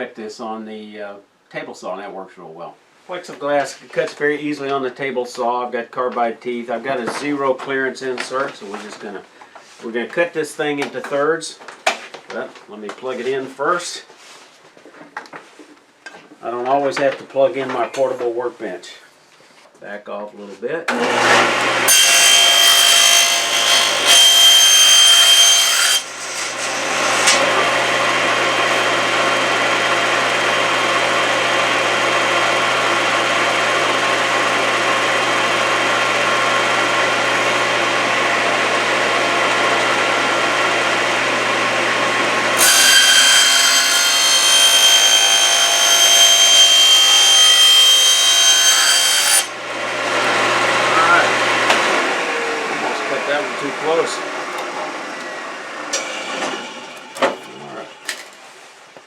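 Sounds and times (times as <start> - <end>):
high saw whine: 20.9 - 58.3
table saw cutting plexiglass: 20.9 - 58.5.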